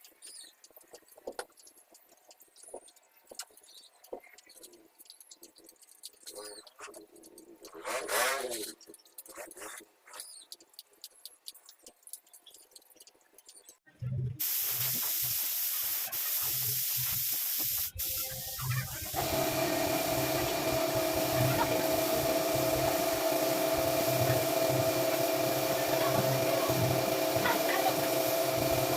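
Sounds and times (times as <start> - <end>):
compressed air tool hissing: 14.4 - 28.9
machine hum with a clear tone: 17.9 - 28.9.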